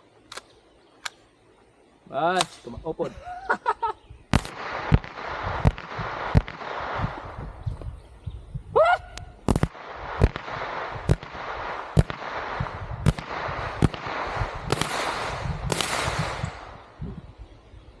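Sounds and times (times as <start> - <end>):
airsoft rifle shots: 2.3 - 2.8, 4.3 - 7.6, 9.4 - 16.9.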